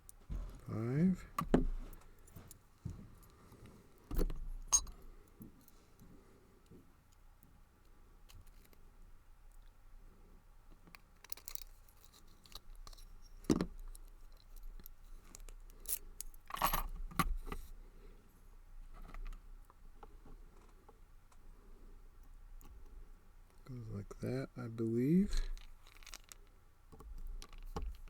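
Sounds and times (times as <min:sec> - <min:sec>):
padlock and key clicking and jingling: 0:04.7 - 0:05.0.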